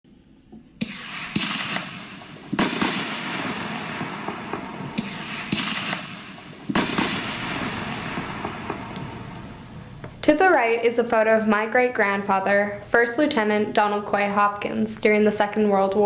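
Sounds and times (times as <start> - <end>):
fireworks bangs: 0.8 - 10.5
fireworks crackling: 0.9 - 10.4.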